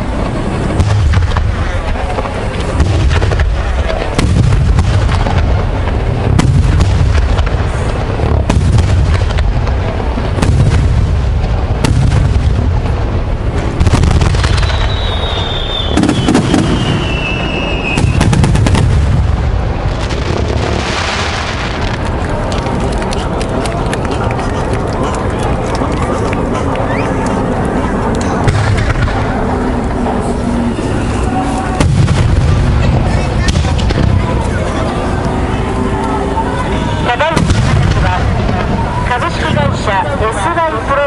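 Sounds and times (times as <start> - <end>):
fireworks booming: 0.0 - 41.0
fireworks cracking: 0.0 - 41.0
falling firework whistle: 14.0 - 18.8, 28.5 - 32.3.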